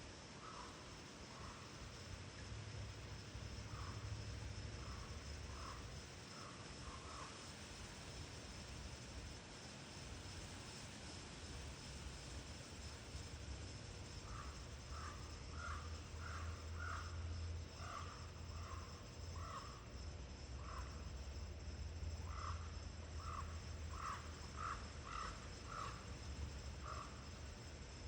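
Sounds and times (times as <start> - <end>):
crow cawing: 14.3 - 17.2, 17.8 - 18.2, 19.4 - 19.8, 22.3 - 22.6, 23.2 - 26.0.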